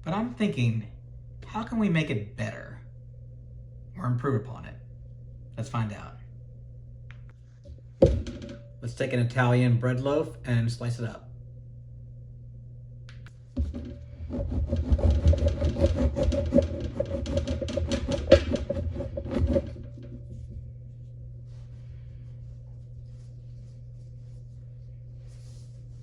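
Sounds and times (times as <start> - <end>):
steady low hum: 0.0 - 26.0
knife sawing through bread: 14.2 - 19.7.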